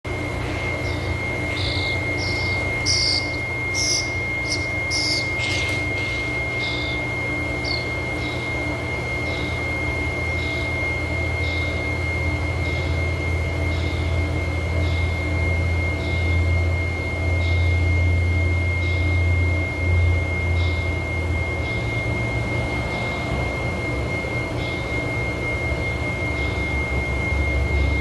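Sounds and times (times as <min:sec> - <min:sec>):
steady low hum: 0:00.0 - 0:28.0
thin high steady tone: 0:00.1 - 0:09.5
small birds chirping: 0:00.2 - 0:08.7.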